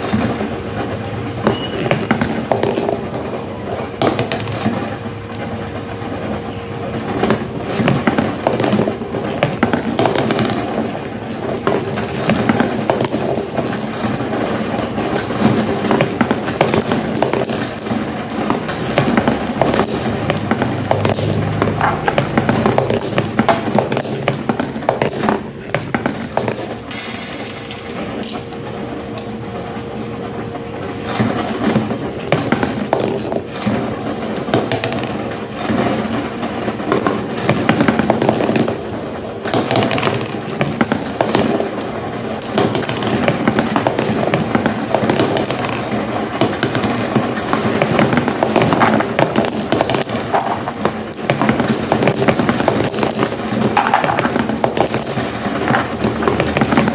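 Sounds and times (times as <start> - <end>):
marbles rolling down marble run: 7.0 - 29.4, 31.1 - 56.9.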